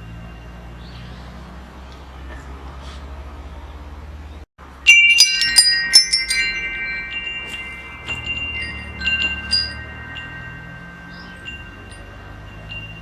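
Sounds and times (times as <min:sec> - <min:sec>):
metal wind chimes ringing: 0:00.0 - 0:01.7, 0:04.6 - 0:13.0.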